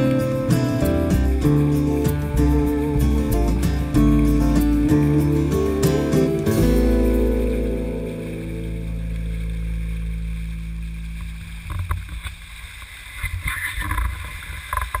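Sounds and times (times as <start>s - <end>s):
music: 0.0s - 11.7s
water lapping against a hull: 0.0s - 15.0s.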